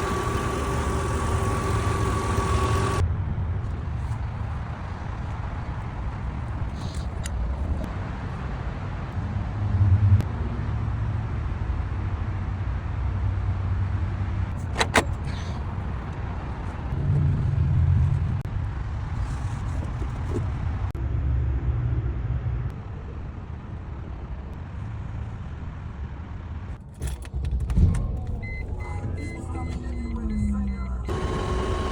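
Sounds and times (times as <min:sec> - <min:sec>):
engine knocks: 0:00.0 - 0:03.0
engine uneven low rumble: 0:00.0 - 0:31.9.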